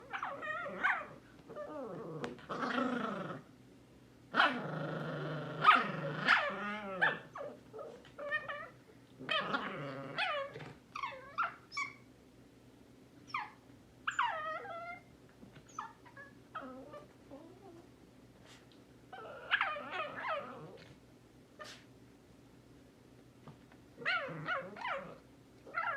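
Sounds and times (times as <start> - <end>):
dogs yipping and whining: 0.0 - 2.8, 5.6 - 12.1, 13.2 - 17.9, 19.1 - 20.9, 24.0 - 25.9
dogs growling: 0.1 - 3.5, 4.3 - 11.3, 19.2 - 20.9, 24.0 - 25.9.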